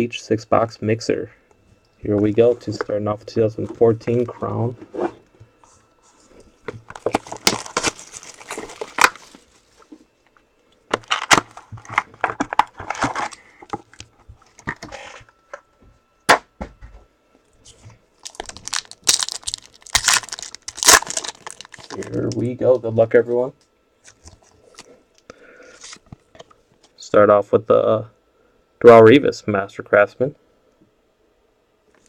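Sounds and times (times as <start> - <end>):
packaging tearing and crinkling: 6.9 - 9.4, 11.0 - 13.4, 18.2 - 22.3.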